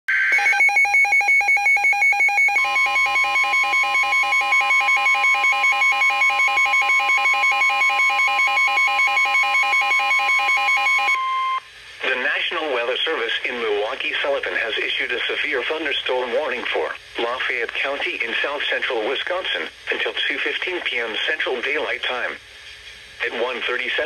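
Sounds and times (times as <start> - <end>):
rapid electronic alarm beeping: 0.1 - 11.6
steady warning alarm tone: 0.1 - 11.7.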